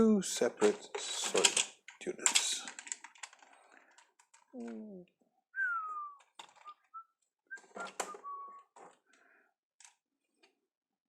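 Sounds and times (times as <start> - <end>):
high whistle-like notes: 7.6 - 8.7.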